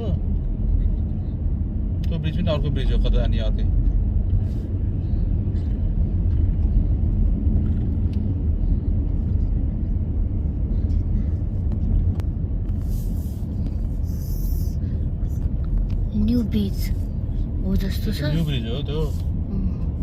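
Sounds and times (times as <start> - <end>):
car cabin road and engine rumble: 0.0 - 20.0.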